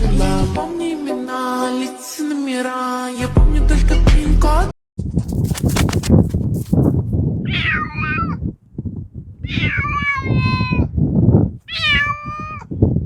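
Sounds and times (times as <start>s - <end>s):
low rustling noise: 5.1s - 7.2s
cat meowing: 7.5s - 8.4s, 9.5s - 10.9s, 11.7s - 12.7s.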